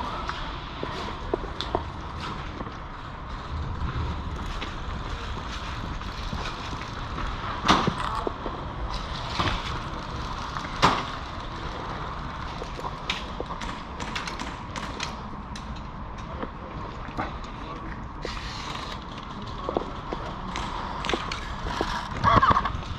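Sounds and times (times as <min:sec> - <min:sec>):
low rumble: 0:00.0 - 0:14.0.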